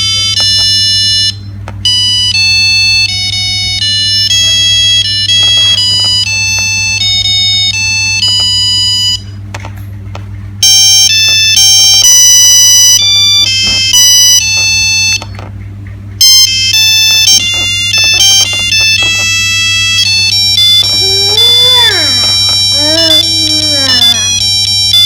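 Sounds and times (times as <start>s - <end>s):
mobile phone ringtone beeps: 16.2s - 21.6s.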